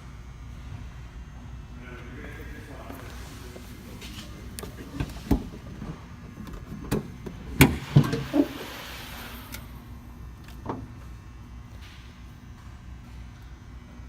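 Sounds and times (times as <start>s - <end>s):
car engine idling: 1.8s - 10.9s.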